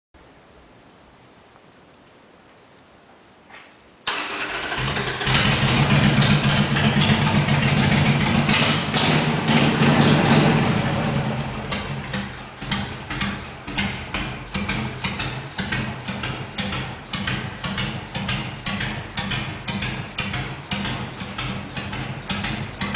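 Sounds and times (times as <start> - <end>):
motorcycle engine starting and idling: 4.0 - 22.9.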